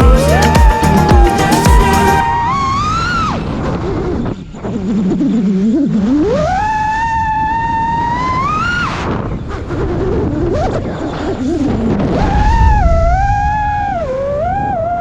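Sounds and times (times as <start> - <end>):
drone motors whining: 0.0 - 9.5.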